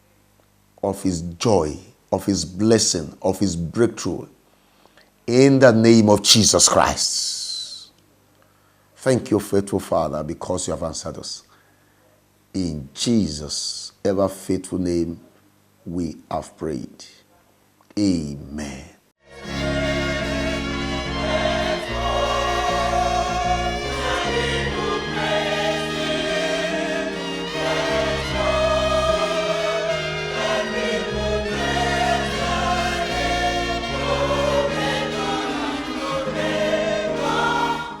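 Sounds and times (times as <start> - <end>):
gospel choir singing: 19.3 - 38.0
instrumental backing with bass line: 19.3 - 38.0.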